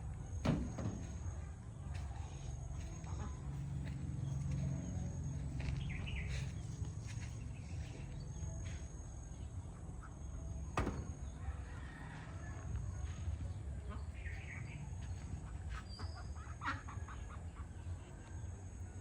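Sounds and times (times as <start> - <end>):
steady low rumble: 0.0 - 19.0
ducks calling: 15.4 - 17.7.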